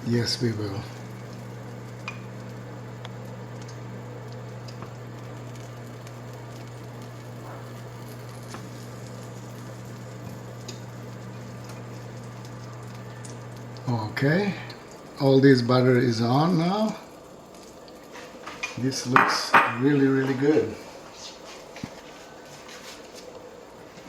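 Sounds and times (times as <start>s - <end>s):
pan crackling and sizzling: 0.0s - 24.0s
steady low hum: 0.0s - 24.0s
soft ticks: 3.0s - 6.7s.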